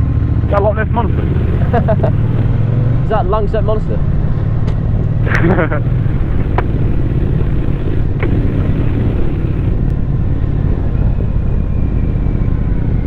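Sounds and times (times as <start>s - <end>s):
motorcycle engine rumbling: 0.4s - 2.6s, 5.0s - 9.9s.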